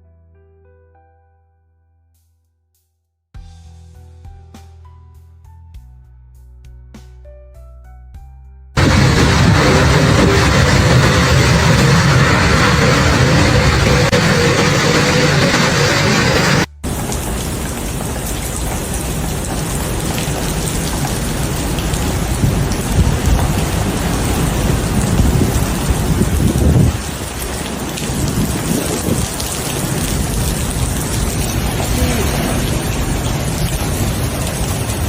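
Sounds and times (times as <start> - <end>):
heavy rain: 8.8 - 35.0
strong wind gusts: 8.8 - 35.0.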